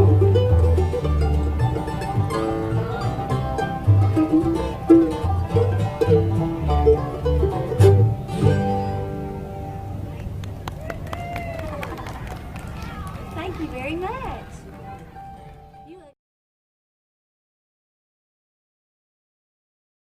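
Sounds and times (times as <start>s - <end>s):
bluegrass band playing: 0.0s - 10.8s, 11.9s - 16.1s.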